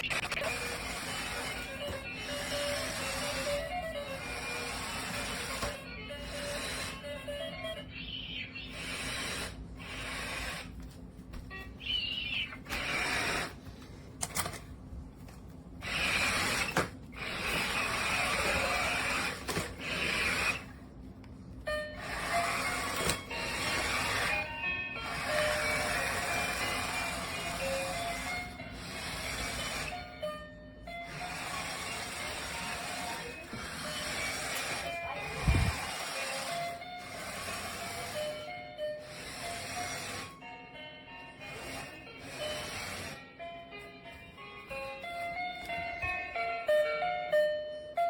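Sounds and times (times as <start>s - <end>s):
toy robot motors whirring: 0.0s - 10.8s, 11.8s - 13.6s, 15.8s - 20.8s, 21.8s - 30.2s, 30.9s - 40.4s, 41.4s - 43.2s
music playing: 21.6s - 48.0s.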